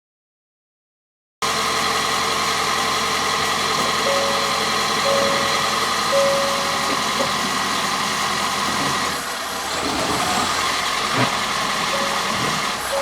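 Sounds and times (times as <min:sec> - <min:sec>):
car moving slowly: 0:01.4 - 0:13.0
reverse warning beeps: 0:03.8 - 0:08.9, 0:10.9 - 0:13.0.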